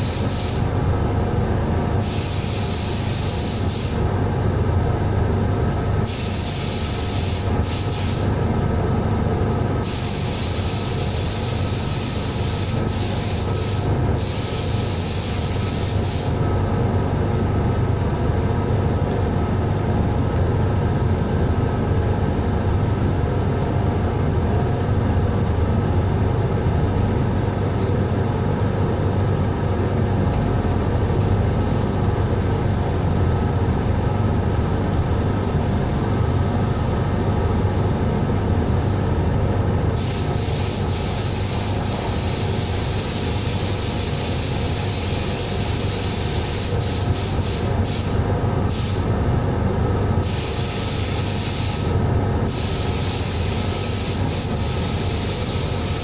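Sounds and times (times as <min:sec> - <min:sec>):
compressed-air gun hissing: 0:00.0 - 0:00.7, 0:02.0 - 0:04.1, 0:06.0 - 0:08.4, 0:09.8 - 0:16.4, 0:40.0 - 0:49.1, 0:50.2 - 0:56.0
air compressor humming: 0:00.0 - 0:04.7, 0:06.0 - 0:33.6, 0:38.6 - 0:49.3, 0:50.1 - 0:56.0.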